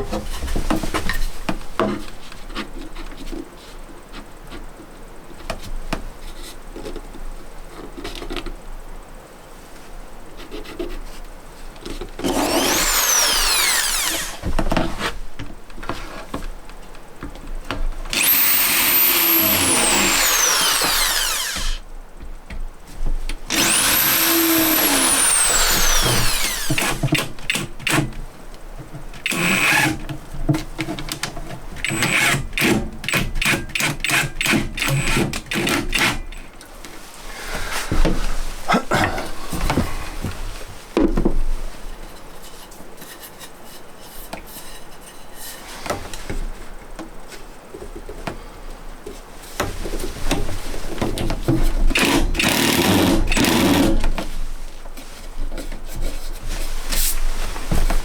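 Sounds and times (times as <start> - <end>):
power drill working wood: 12.2 - 14.5, 18.1 - 21.8, 23.5 - 28.1, 29.2 - 30.0, 31.8 - 36.2, 51.9 - 54.0.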